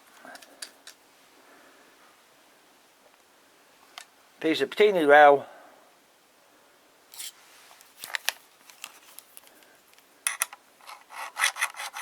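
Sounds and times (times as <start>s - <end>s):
handling clicks and scrapes: 7.1s - 12.0s
file rasping on metal: 11.0s - 12.0s.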